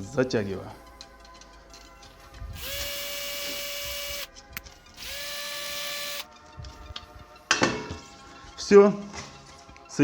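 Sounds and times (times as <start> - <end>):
cordless screwdriver whining: 2.6 - 6.3.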